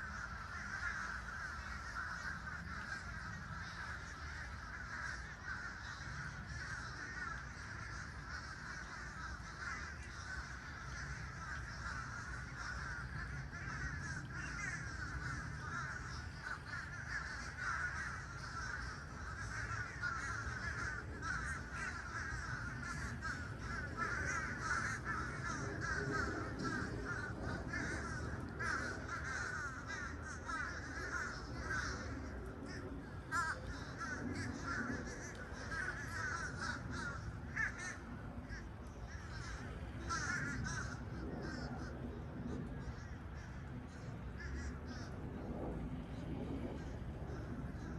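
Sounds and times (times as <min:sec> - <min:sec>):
flock of birds chattering: 0:00.0 - 0:47.9.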